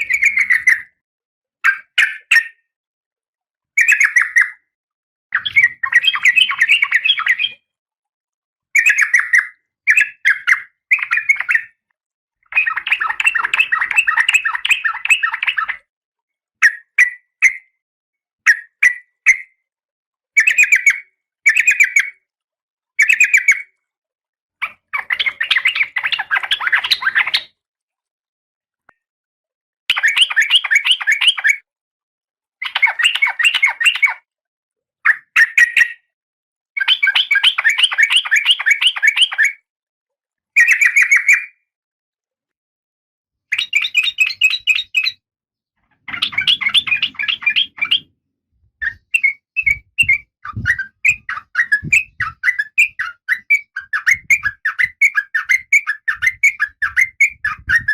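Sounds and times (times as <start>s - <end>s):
bird harsh chattering calls: 12.5s - 15.8s, 45.9s - 48.1s, 48.8s - 57.9s.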